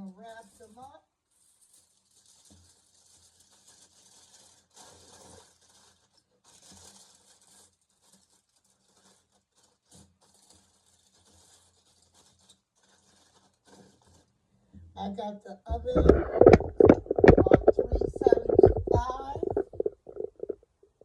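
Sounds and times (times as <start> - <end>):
aluminium foil crinkling and tearing: 0.0 - 14.4.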